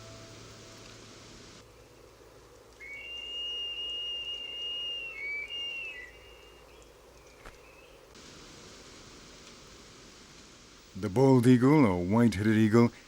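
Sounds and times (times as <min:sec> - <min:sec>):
eagle whistled call: 0:02.8 - 0:06.8.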